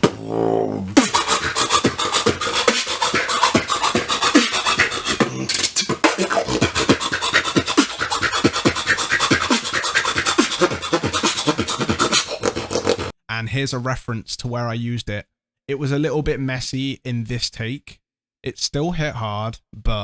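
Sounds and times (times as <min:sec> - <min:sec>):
beatboxing: 0:00.0 - 0:13.2.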